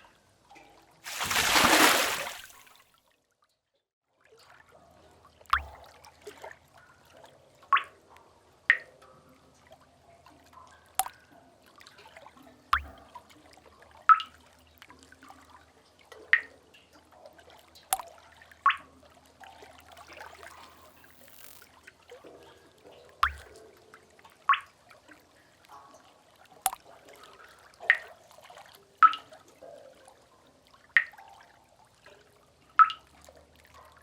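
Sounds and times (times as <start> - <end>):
water drops plinking into pool: 5.5 - 8.0, 8.7 - 9.1, 10.3 - 12.0, 12.7 - 15.2, 16.1 - 21.7, 23.2 - 23.8, 25.7 - 28.2, 29.0 - 29.4, 30.9 - 31.5, 32.8 - 34.0.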